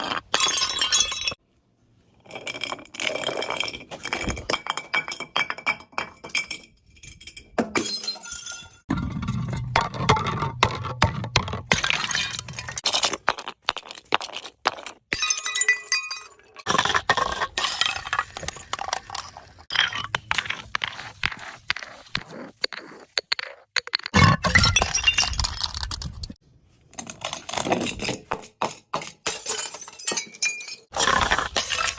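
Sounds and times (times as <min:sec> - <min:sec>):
glass bottles clinking and shattering: 0:00.2 - 0:01.4, 0:02.3 - 0:10.6, 0:11.7 - 0:12.8, 0:15.1 - 0:20.1, 0:24.0 - 0:26.3, 0:27.4 - 0:31.9.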